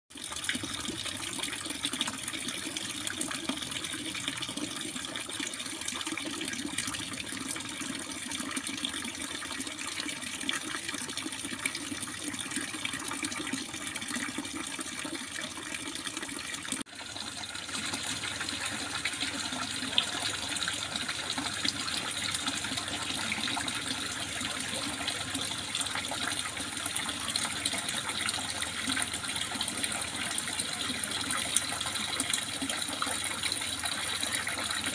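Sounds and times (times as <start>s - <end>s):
water trickling and splashing: 0.1s - 34.9s.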